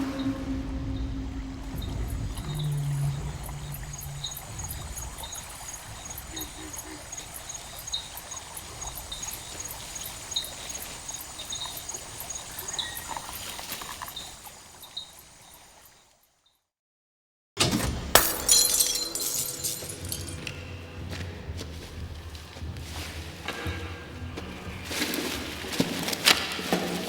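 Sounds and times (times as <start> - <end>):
faint high chirps: 0.0 - 13.2
trickling water: 1.2 - 16.3.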